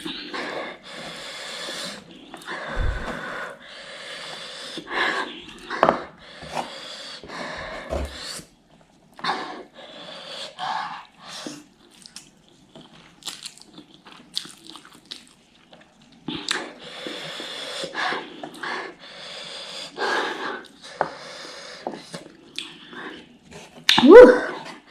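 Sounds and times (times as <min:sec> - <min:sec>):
heavy breaths: 0:00.0 - 0:08.5
person chewing noodles: 0:11.0 - 0:18.6, 0:20.6 - 0:24.0.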